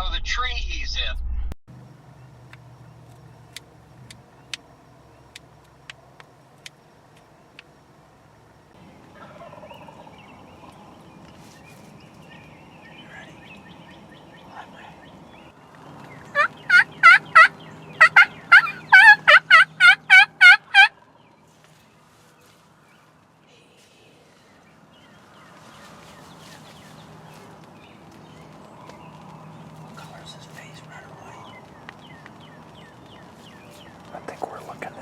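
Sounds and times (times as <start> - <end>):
wild turkey calling: 9.0 - 11.6, 12.2 - 21.0, 25.0 - 35.0.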